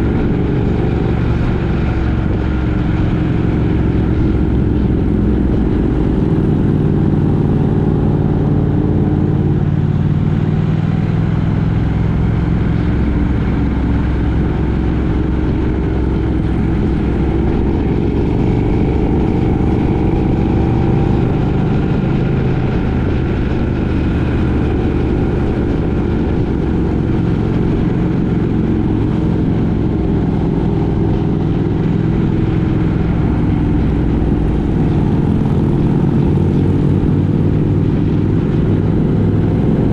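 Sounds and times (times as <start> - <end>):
travel noise: 0.0 - 39.9
vehicle engine droning: 0.0 - 39.9.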